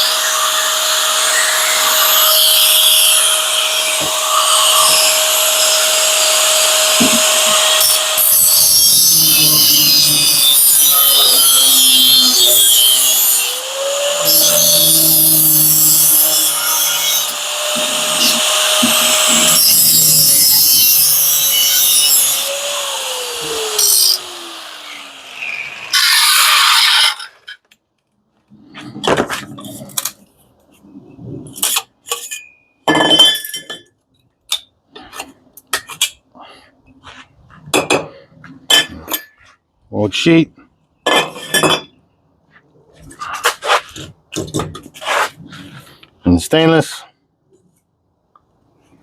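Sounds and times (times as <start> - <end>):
grinder on metal: 0.0 - 27.6.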